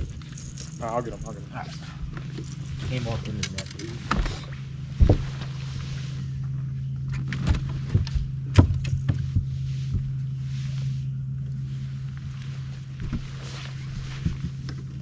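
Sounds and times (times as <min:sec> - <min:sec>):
boat motor humming low: 0:00.0 - 0:15.0
knocks and thuds on boat: 0:04.0 - 0:05.6, 0:06.4 - 0:10.3, 0:13.0 - 0:15.0.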